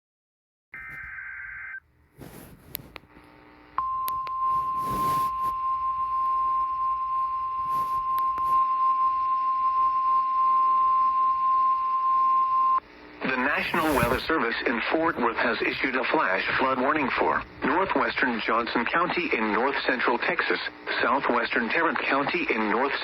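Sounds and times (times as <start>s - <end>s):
radio static and crackle: 0.8s - 3.8s, 4.5s - 5.6s, 7.6s - 8.6s, 12.8s - 23.0s
receiver hiss: 0.8s - 8.7s, 12.8s - 23.0s.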